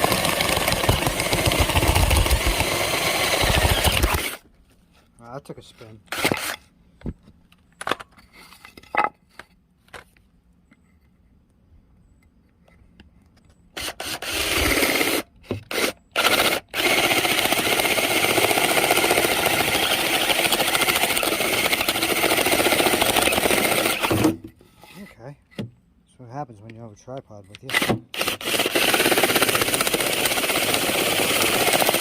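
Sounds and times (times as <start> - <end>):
electric drill boring wood: 0.0 - 4.4, 6.1 - 6.6, 13.8 - 24.3, 27.7 - 32.0.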